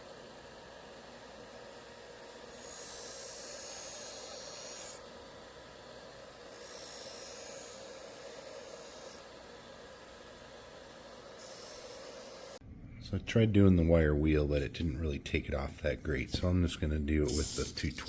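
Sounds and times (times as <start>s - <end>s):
bench grinder running: 2.1s - 12.6s.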